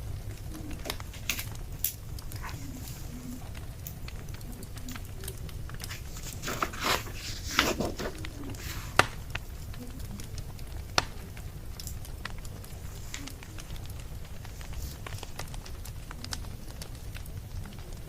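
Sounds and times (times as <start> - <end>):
wood fire crackling and popping: 0.0 - 18.0
brief rustling: 5.8 - 9.2.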